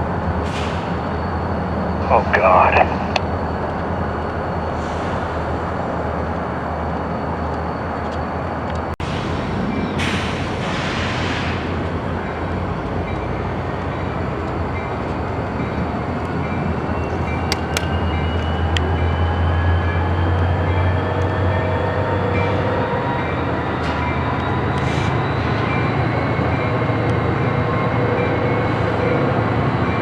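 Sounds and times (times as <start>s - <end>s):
train cars rolling rumble: 0.0s - 30.0s
sharp clicks: 17.5s - 17.9s.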